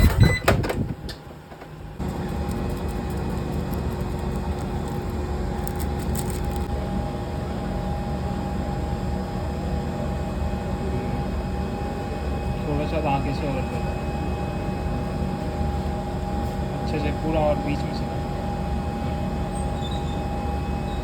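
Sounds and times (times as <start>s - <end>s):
oven switching on: 0.0s - 1.2s
electric oven humming: 0.0s - 21.0s.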